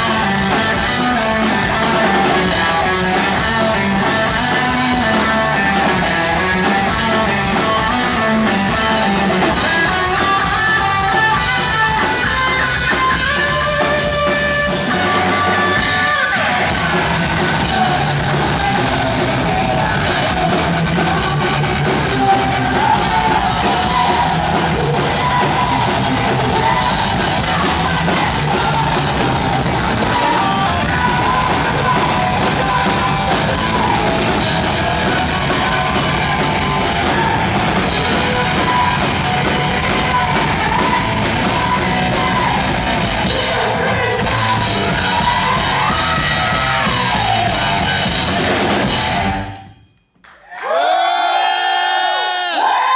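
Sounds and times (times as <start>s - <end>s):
heavy metal band playing live: 0.0s - 49.6s
melodic guitar line: 0.0s - 49.6s.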